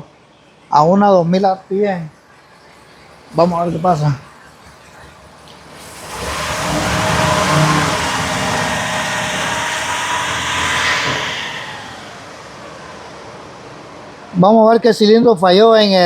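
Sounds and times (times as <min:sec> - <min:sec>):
engine revving and misfiring: 0:03.2 - 0:14.1.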